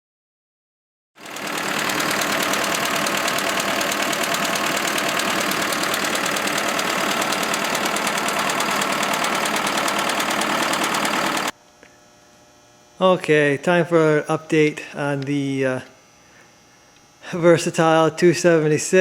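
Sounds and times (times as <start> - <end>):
diesel engine knocking: 1.2 - 11.5.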